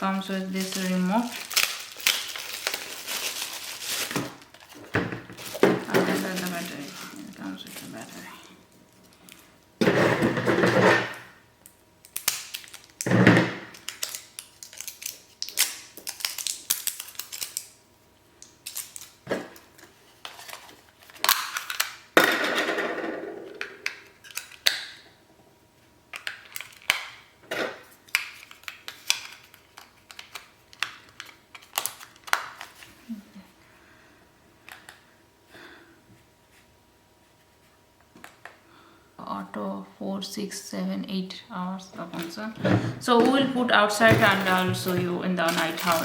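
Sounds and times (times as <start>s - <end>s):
packaging rustling: 0.5s - 8.4s, 12.1s - 17.7s, 43.0s - 46.0s
plastic parts clicking and knocking: 42.7s - 46.0s.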